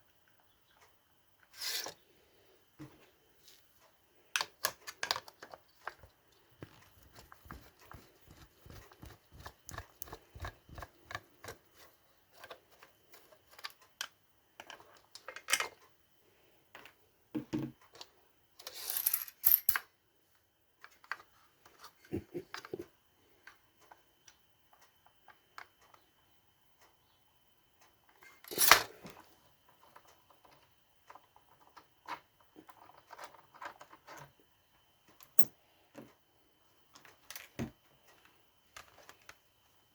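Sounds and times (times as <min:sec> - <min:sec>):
small clicks of parts: 0:03.8 - 0:11.6, 0:12.3 - 0:16.0, 0:23.4 - 0:26.2, 0:35.1 - 0:36.2, 0:36.9 - 0:39.4.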